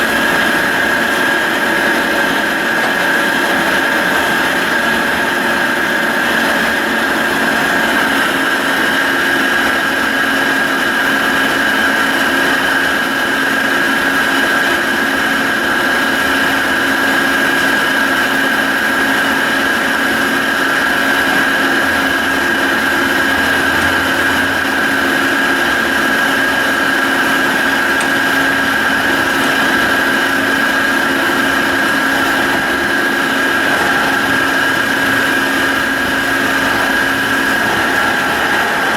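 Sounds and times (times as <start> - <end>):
drill press humming with high whine: 0.0 - 38.9.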